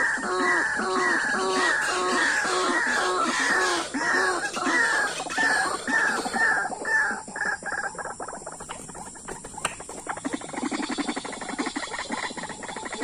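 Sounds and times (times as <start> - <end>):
waterhen calling: 0.0 - 7.8.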